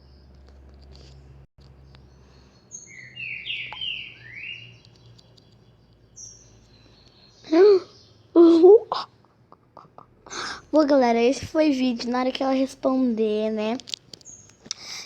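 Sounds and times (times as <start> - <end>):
bird chirping: 1.2 - 9.0, 14.1 - 15.0.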